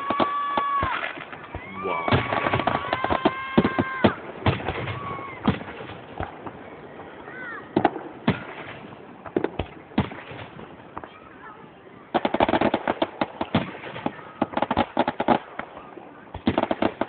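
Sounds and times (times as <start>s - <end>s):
whistling fireworks: 0.0s - 17.0s.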